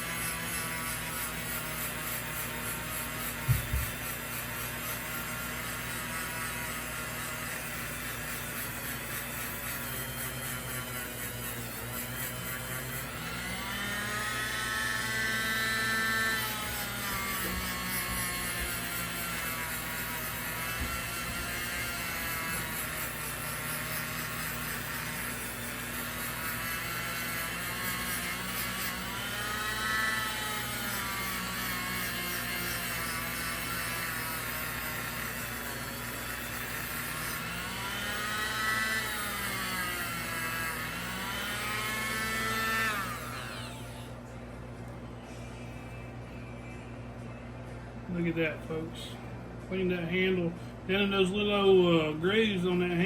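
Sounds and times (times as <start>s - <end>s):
motor-driven wire brush whirring: 0.0s - 46.8s.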